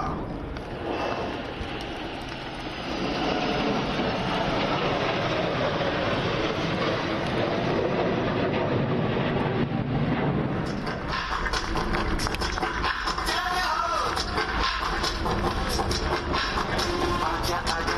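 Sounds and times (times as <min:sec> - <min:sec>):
aircraft flying past: 0:00.0 - 0:17.9.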